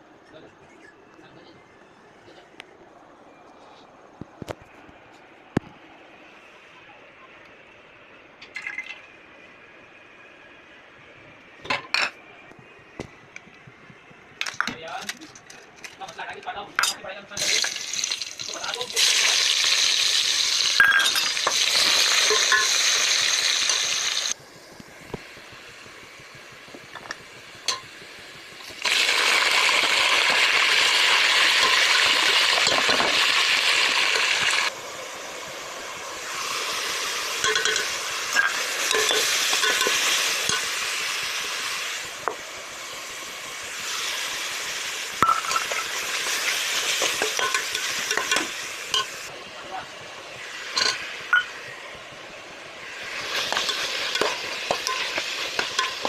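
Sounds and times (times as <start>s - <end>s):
food sizzling in a pot: 17.3s - 56.0s
spoon clinking against metal pot: 37.4s - 40.7s.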